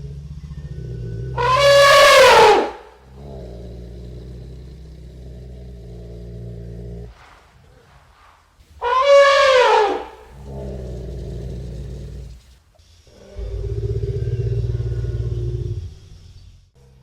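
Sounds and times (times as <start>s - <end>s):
low steady rumble: 0.0s - 12.7s, 13.4s - 17.0s
elephant trumpeting: 1.3s - 4.3s, 8.8s - 12.4s.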